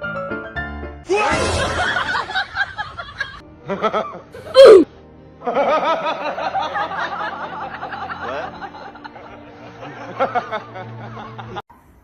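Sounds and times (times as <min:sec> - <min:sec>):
loud falling cry: 0:01.1 - 0:02.4, 0:04.6 - 0:04.9.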